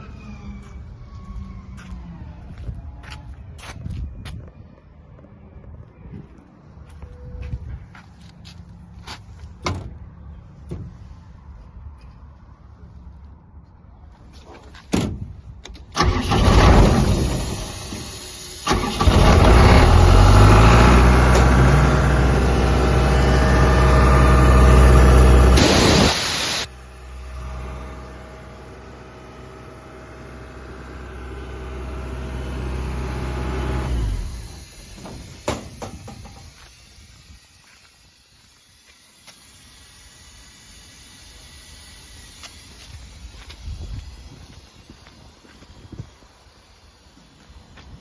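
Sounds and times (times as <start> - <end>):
air compressor engine: 15.9 - 48.0
loud air hiss: 16.0 - 19.0, 25.6 - 26.7, 34.2 - 47.4.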